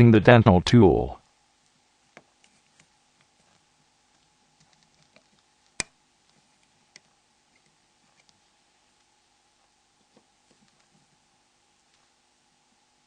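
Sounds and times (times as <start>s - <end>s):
small plastic clicks and ticks: 4.2s - 8.4s.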